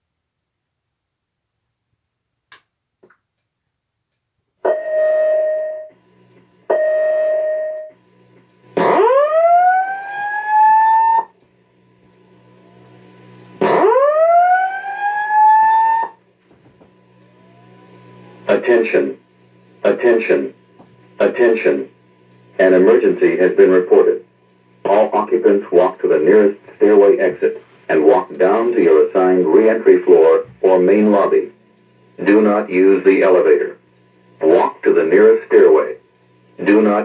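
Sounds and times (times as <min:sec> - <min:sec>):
fire alarm tones and whoops: 0:04.6 - 0:06.1, 0:06.7 - 0:08.0, 0:08.8 - 0:11.4, 0:12.4 - 0:16.3, 0:16.9 - 0:18.7.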